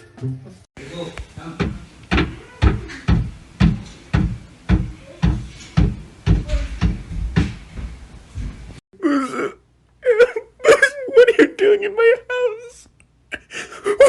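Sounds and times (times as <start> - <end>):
heavy knocks: 1.6 - 8.8.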